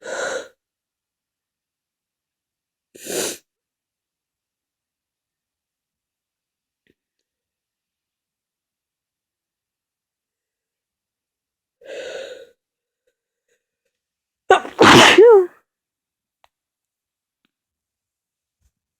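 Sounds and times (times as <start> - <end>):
person sneezing: 14.5 - 15.5.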